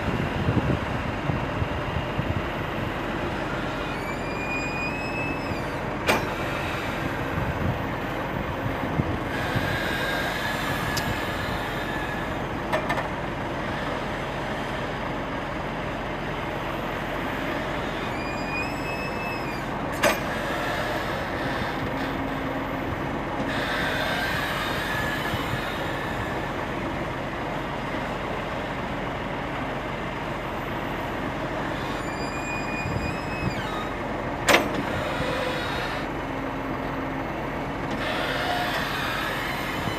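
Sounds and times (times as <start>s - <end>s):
excavator engine running: 0.0s - 39.9s
high metallic squeals: 3.4s - 7.0s, 17.8s - 22.2s, 31.7s - 34.0s.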